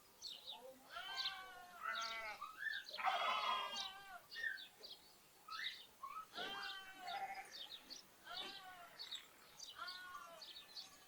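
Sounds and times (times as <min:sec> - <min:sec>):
small birds chirping: 0:00.0 - 0:11.0
lambs bleating: 0:00.9 - 0:04.5, 0:06.3 - 0:07.6, 0:08.2 - 0:09.0, 0:09.8 - 0:10.5.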